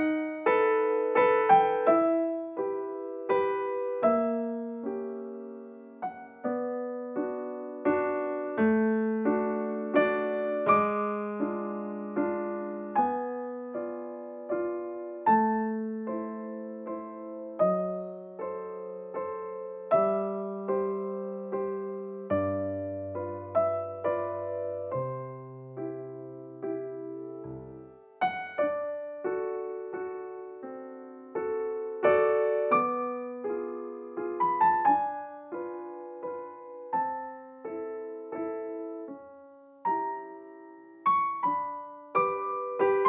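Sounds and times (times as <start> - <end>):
gentle piano music: 0.0 - 43.0.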